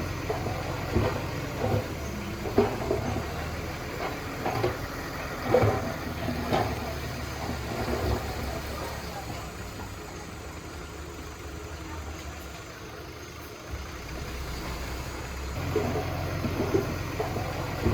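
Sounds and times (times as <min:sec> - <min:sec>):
heavy machinery diesel engine: 0:00.0 - 0:17.9.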